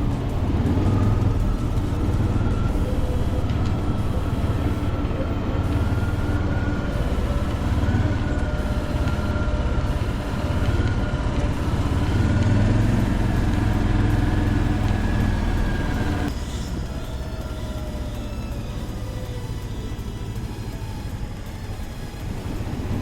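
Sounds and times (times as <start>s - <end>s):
vehicle rumble with faint whine: 0.0s - 23.0s.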